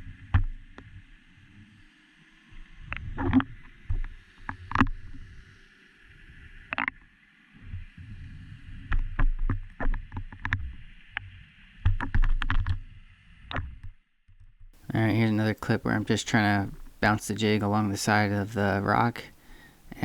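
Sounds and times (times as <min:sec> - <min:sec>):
faint steady hiss: 0:14.8 - 0:20.0.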